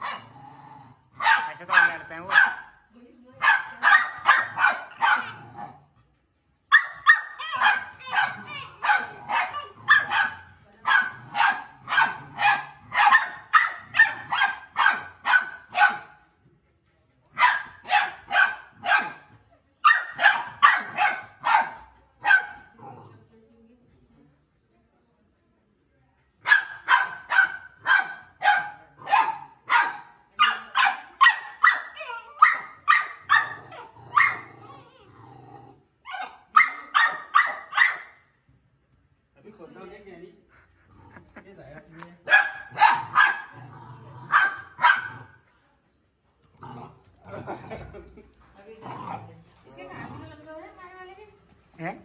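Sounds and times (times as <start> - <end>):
puppy growling: 0.0 - 2.3, 4.4 - 6.2, 7.8 - 14.7, 22.5 - 23.5, 33.1 - 36.1, 40.5 - 45.4, 46.4 - 50.8
puppy barking: 1.2 - 2.8, 3.4 - 5.4, 6.7 - 16.2, 17.4 - 22.8, 26.4 - 34.8, 36.0 - 38.2, 42.2 - 43.6, 44.3 - 45.4
puppy yapping: 36.0 - 38.2.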